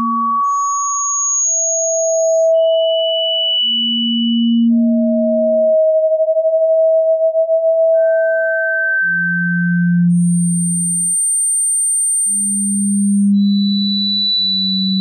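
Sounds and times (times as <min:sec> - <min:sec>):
pure sine tones: 0:00.0 - 0:15.0.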